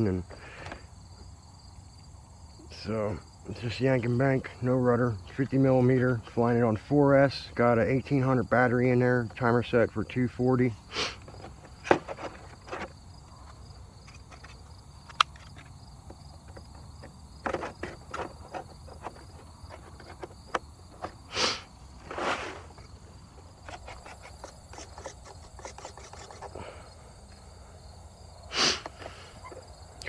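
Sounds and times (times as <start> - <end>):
insects chirring: 0.0 - 30.0
short rustling noises: 17.5 - 26.6.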